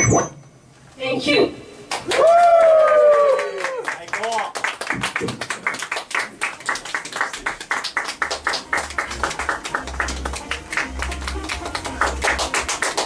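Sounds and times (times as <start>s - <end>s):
rapid hand clapping: 3.6s - 13.0s
low bass line music: 8.5s - 13.0s.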